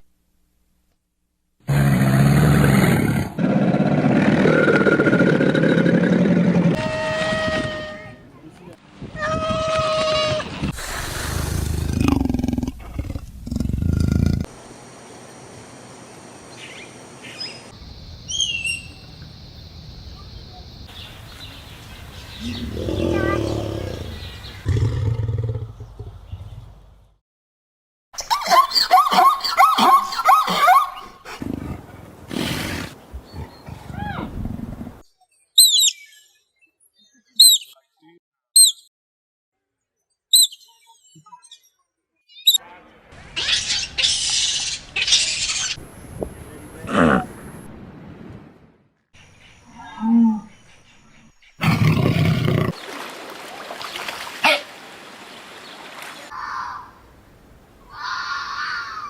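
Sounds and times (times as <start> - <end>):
high bird chirps: 18.3 - 19.2, 35.4 - 36.4, 37.2 - 37.8, 38.6 - 38.9, 40.3 - 41.7
animal calls: 22.4 - 24.8.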